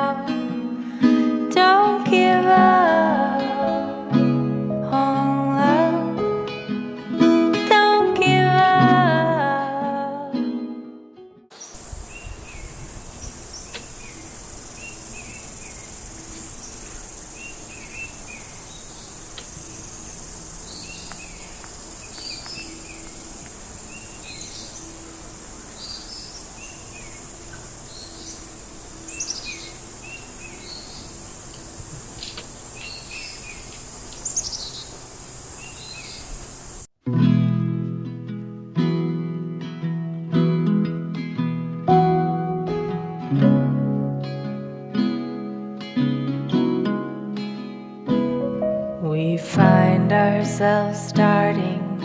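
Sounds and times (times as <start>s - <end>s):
acoustic guitar music: 0.0s - 11.6s, 12.8s - 33.8s, 37.0s - 52.0s
birds chirping: 11.5s - 36.9s
high-pitched insect drone: 11.6s - 36.9s.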